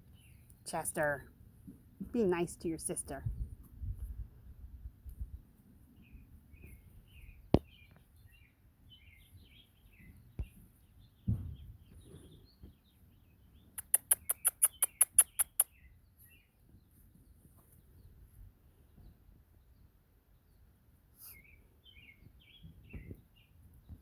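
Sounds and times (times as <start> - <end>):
small birds chirping: 0.0 - 24.0
soft thump: 11.2 - 11.7
sharp clicks: 13.8 - 15.7
very high-pitched ticks: 13.8 - 15.7.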